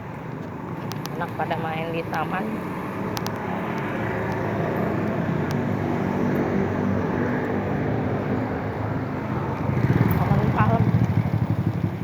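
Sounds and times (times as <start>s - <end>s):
vehicle engine and road noise: 0.0s - 12.0s.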